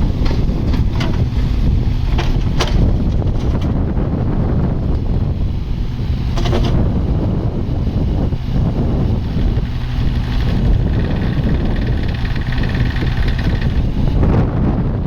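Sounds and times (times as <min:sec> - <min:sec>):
diesel engine running: 0:00.0 - 0:15.0.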